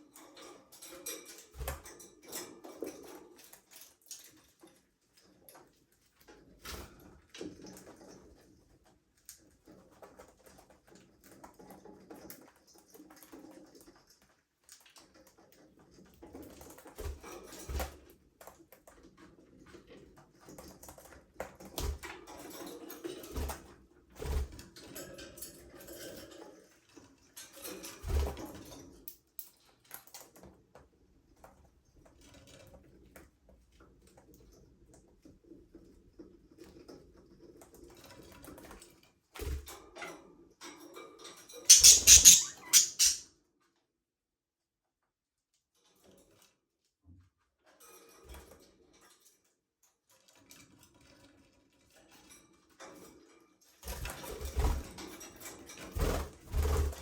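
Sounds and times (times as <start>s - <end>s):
budgerigars chattering: 41.7s - 43.2s.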